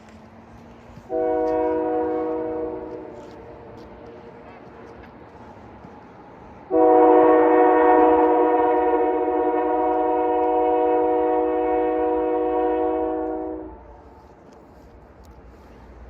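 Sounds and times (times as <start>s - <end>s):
locomotive air horn blast: 1.0s - 5.2s, 6.7s - 14.3s.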